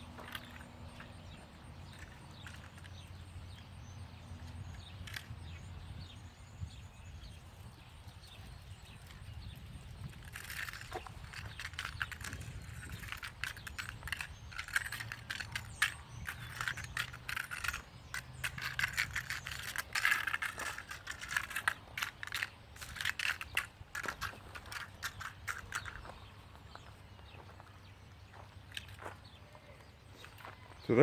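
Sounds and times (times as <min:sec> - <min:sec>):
scraping on ground: 0:00.0 - 0:03.8, 0:07.2 - 0:31.0
screws and nails jingling: 0:00.1 - 0:03.6, 0:08.8 - 0:26.2.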